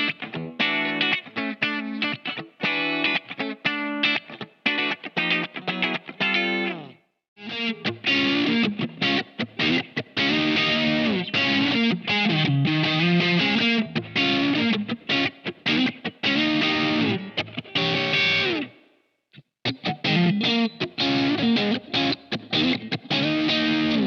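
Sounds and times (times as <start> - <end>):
distorted electric guitar riff: 0.0 - 18.8, 19.6 - 24.0.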